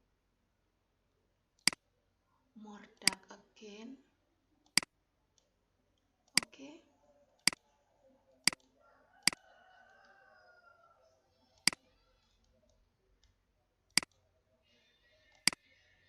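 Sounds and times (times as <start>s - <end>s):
computer mouse clicking: 8.5s - 10.2s, 11.6s - 11.8s, 12.7s - 14.2s.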